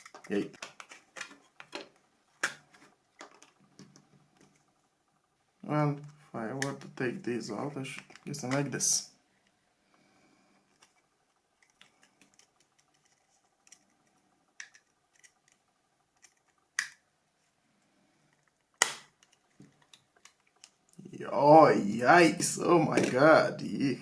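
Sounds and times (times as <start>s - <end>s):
plastic phone parts clicking and snapping: 0.0s - 4.6s, 8.0s - 8.7s, 11.6s - 15.6s, 16.2s - 17.0s, 18.3s - 21.0s.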